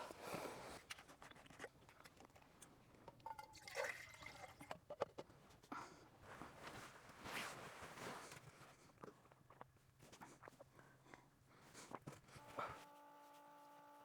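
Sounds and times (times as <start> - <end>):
soft handling rustles: 6.1 - 9.0.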